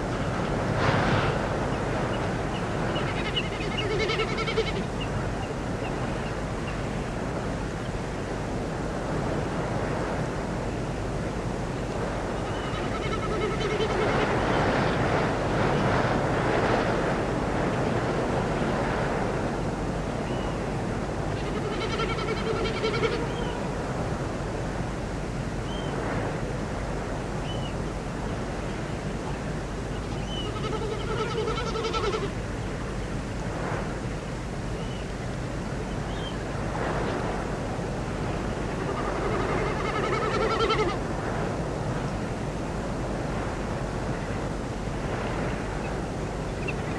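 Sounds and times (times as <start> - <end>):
steady rushing noise: 0.0 - 46.9
large bird calling: 30.1 - 32.3.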